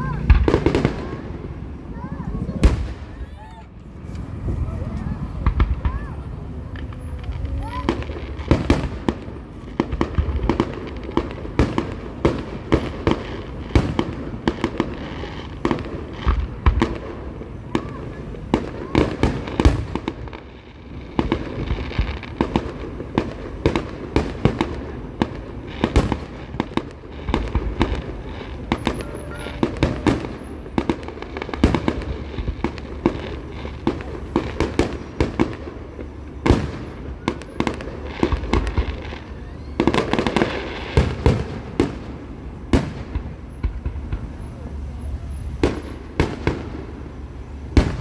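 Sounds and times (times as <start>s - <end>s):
fireworks bursting: 0.0s - 48.0s.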